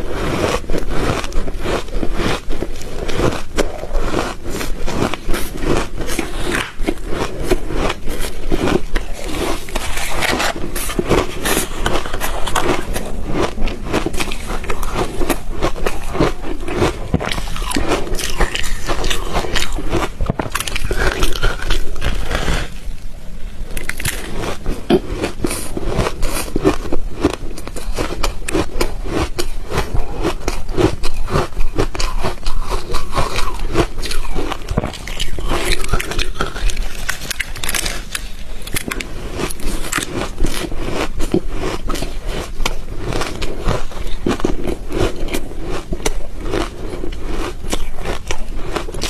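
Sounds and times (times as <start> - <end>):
ice being chewed: 0.0 - 23.0, 23.6 - 49.0.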